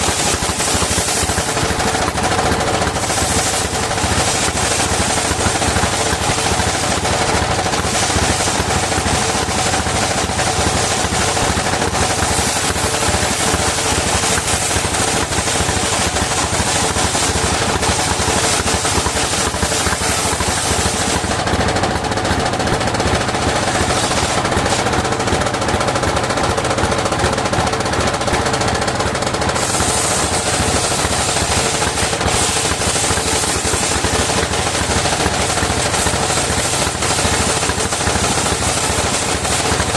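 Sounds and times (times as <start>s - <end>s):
circular saw running: 0.0s - 39.9s.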